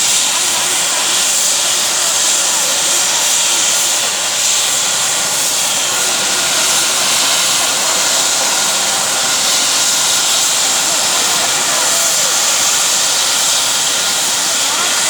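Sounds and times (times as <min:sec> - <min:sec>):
helicopter rotor rushing: 0:00.0 - 0:15.0.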